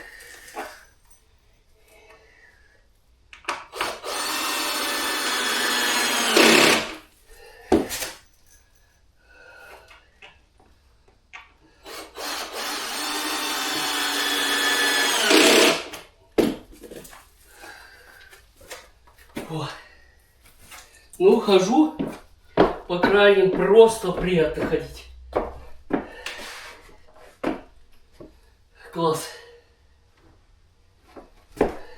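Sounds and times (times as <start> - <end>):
power drill driving screws: 3.7 - 7.0, 11.8 - 16.0.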